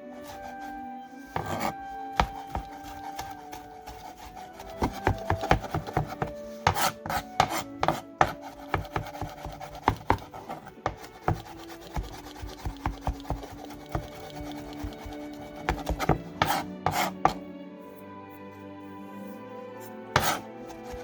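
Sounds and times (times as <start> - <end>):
rubbing and scraping strokes: 0.0 - 17.4, 19.1 - 21.0
faint background music: 0.0 - 21.0.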